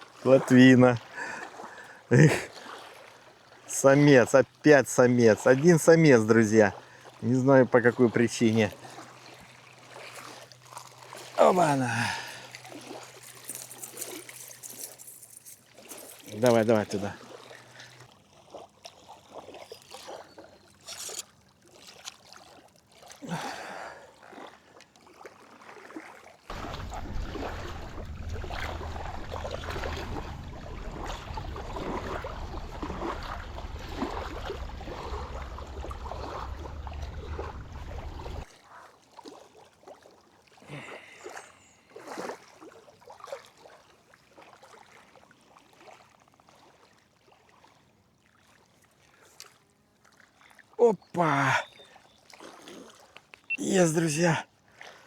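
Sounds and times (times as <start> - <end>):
water trickling: 0.0 - 38.5.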